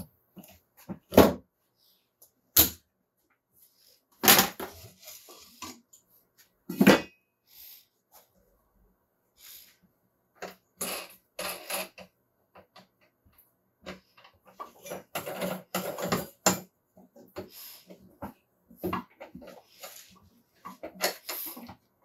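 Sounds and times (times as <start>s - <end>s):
hard objects knocking and clattering: 13.8s - 17.5s.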